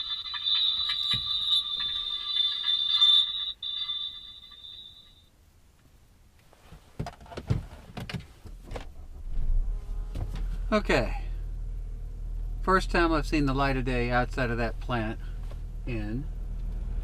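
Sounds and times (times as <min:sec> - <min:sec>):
car electronic warning tone: 0:00.0 - 0:05.3.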